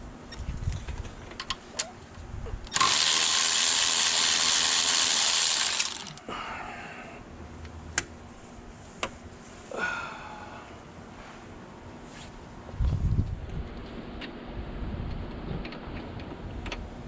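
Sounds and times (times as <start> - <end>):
power tool running: 2.7 - 6.2.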